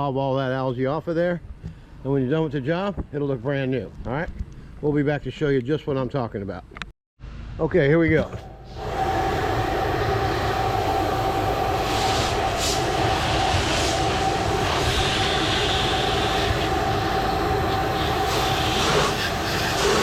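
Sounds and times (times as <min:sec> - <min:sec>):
pressure washer spraying: 0:11.4 - 0:20.0.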